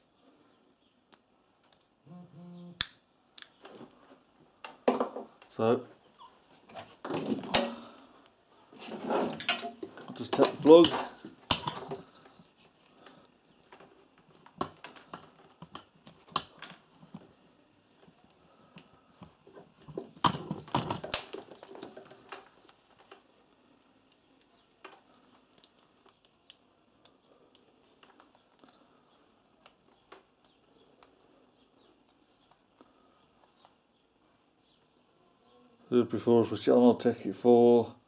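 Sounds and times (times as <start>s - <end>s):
objects clicking and knocking: 6.7s - 8.0s, 8.8s - 12.4s, 18.0s - 23.2s.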